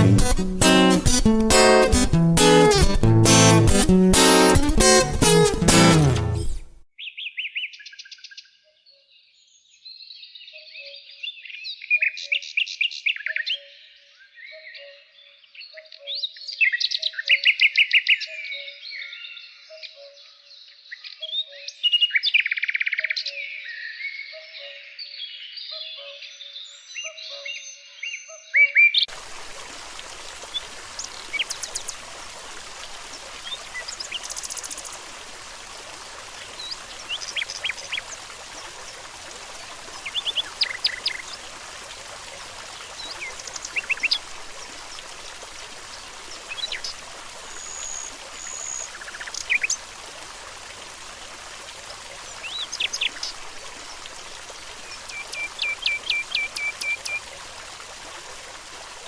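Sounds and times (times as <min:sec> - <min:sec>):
flowing stream rushing: 0:00.0 - 0:06.8, 0:29.1 - 0:59.0.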